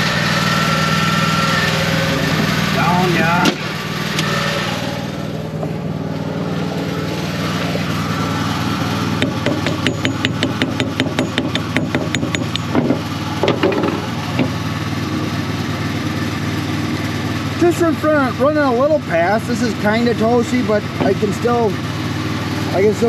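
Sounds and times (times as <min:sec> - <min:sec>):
engine idling: 0:00.0 - 0:23.0
chipping hammer tapping metal: 0:09.2 - 0:14.6.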